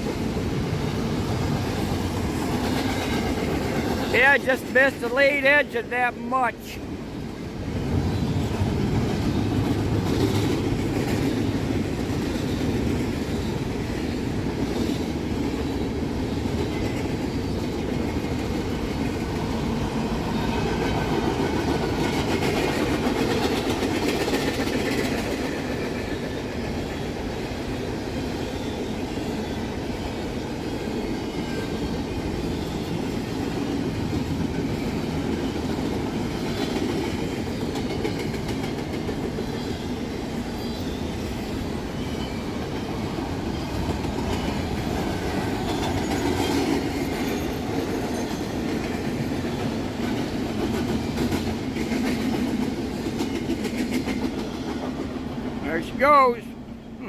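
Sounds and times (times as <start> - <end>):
freight train cars rolling: 0.0 - 57.0.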